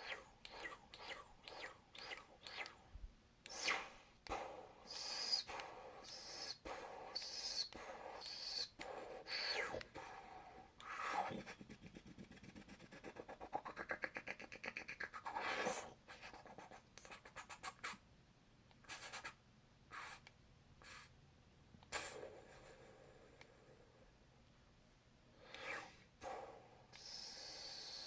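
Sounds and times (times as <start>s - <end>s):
person making laser mouth sounds: 3.5s - 10.1s, 13.4s - 15.8s.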